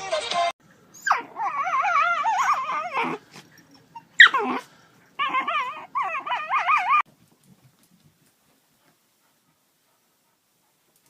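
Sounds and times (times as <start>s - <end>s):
dog whining howls: 1.0s - 3.2s, 5.2s - 7.0s
dog yelping: 1.0s - 3.2s, 3.8s - 7.0s.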